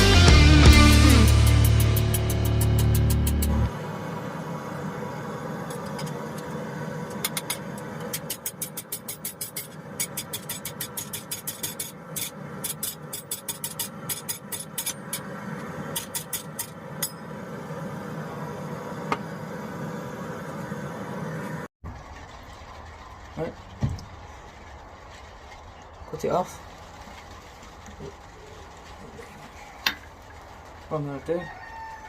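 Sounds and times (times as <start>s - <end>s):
mechanical drone: 0.0s - 25.0s.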